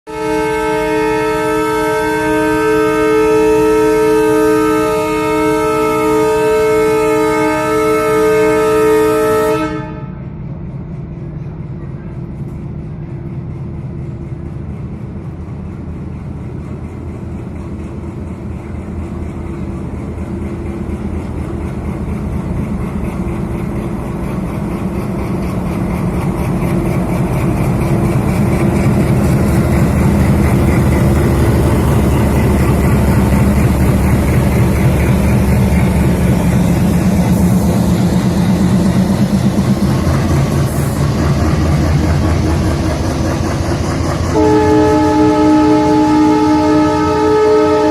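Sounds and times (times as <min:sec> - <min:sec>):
diesel locomotive engine throbbing: 0:00.1 - 0:47.9.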